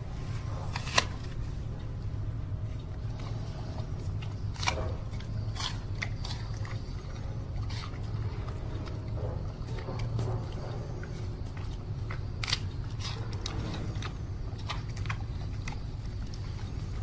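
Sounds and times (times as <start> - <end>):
animal chewing crunches: 0.0 - 17.0
steady low hum: 0.0 - 17.0.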